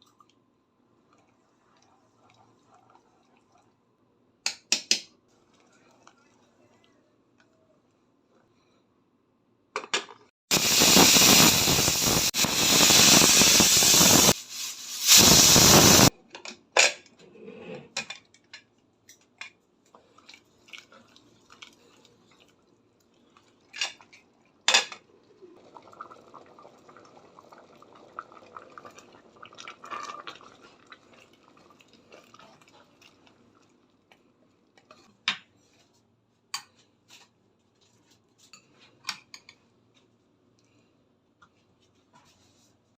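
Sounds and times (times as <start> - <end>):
loud rushing hiss: 10.5 - 16.1
soft scraping stirring pot: 34.8 - 40.1.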